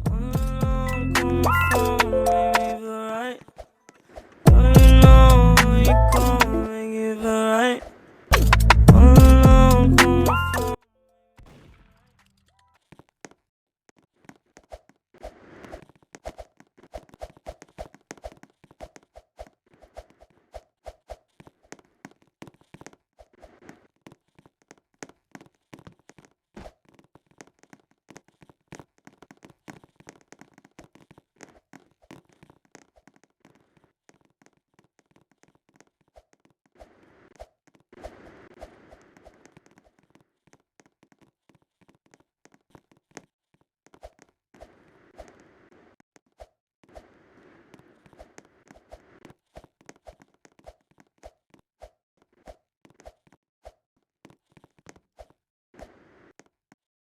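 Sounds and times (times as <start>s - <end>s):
faint irregular taps and clicks: 21.3s - 36.8s.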